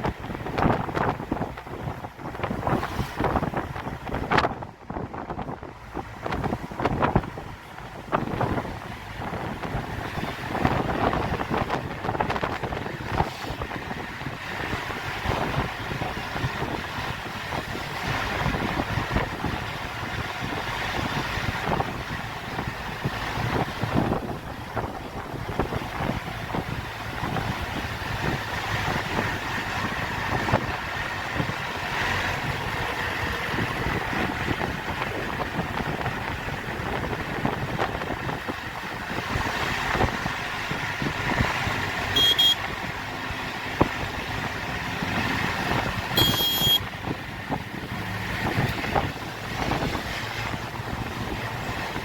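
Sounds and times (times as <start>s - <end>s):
road and engine noise: 0.0s - 52.0s
wind buffeting microphone: 0.0s - 52.0s
short high-pitched beep: 42.2s - 42.6s, 46.2s - 46.8s.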